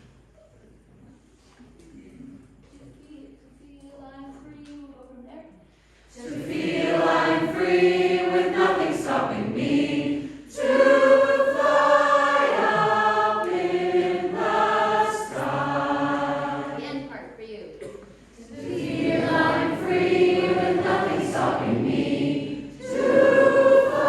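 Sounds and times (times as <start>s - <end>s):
choir singing: 6.1s - 17.1s, 18.4s - 24.0s.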